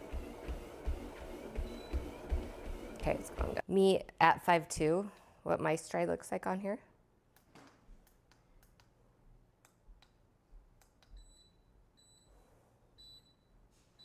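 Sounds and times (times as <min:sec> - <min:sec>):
footsteps on treadmill: 0:00.0 - 0:03.6.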